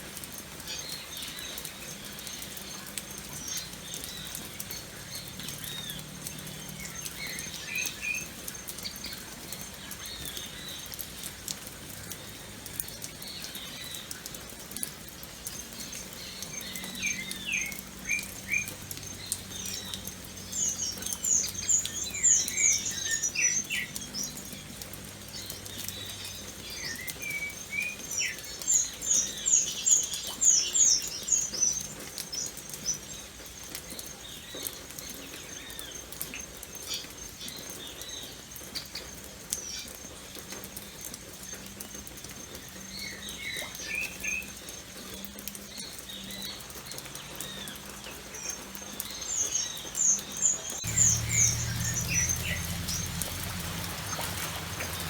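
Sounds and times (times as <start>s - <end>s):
gentle rain pattering: 0.0s - 55.0s
birds chirping: 15.4s - 40.6s, 41.5s - 55.0s.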